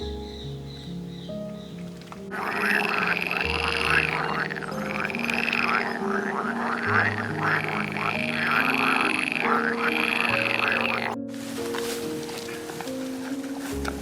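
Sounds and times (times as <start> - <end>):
background music with low notes: 0.0 - 14.0
animal pulsing calls: 2.3 - 11.2.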